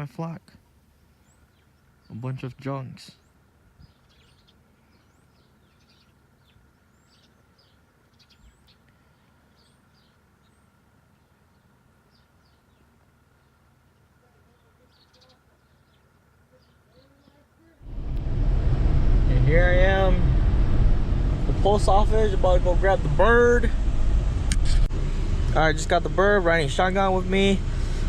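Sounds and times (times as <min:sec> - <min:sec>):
faint steady hum: 0:00.1 - 0:28.0
birds chirping: 0:01.0 - 0:17.6.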